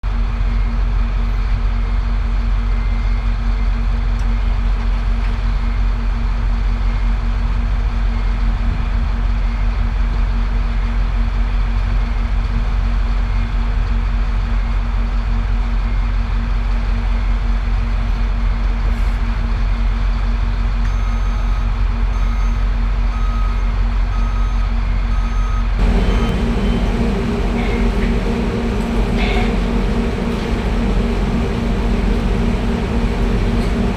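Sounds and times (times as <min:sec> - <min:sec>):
reversing alarm beeping: 0:23.2 - 0:33.9
heavy machinery rumbling: 0:25.8 - 0:33.9.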